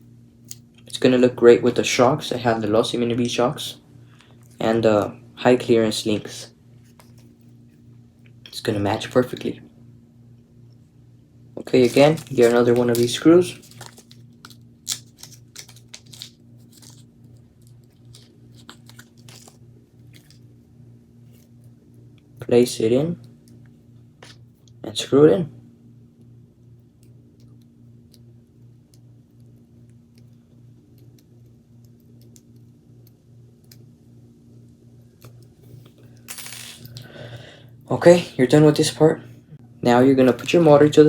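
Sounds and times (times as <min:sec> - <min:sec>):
small parts clicking and rustling: 0:11.7 - 0:20.4.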